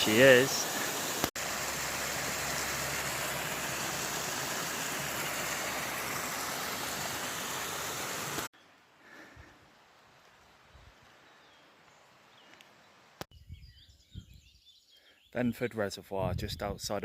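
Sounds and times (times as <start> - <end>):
waterfall rushing: 0.0 - 8.5.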